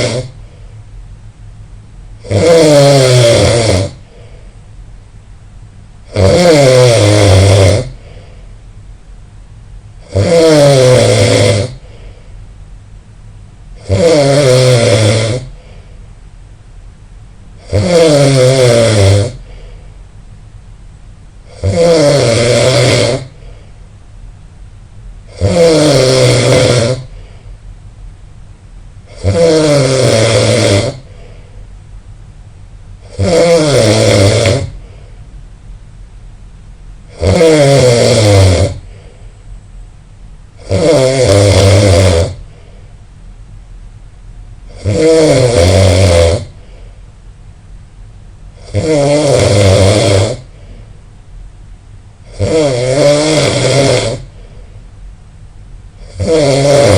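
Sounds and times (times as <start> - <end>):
person snoring loudly: 0.0 - 0.6, 2.2 - 4.2, 6.0 - 8.3, 10.0 - 12.0, 13.8 - 15.8, 17.6 - 19.7, 21.4 - 23.5, 25.3 - 27.3, 29.1 - 31.4, 33.0 - 35.1, 37.1 - 39.1, 40.6 - 42.6, 44.7 - 46.8, 48.6 - 50.6, 52.2 - 54.5, 56.0 - 56.9.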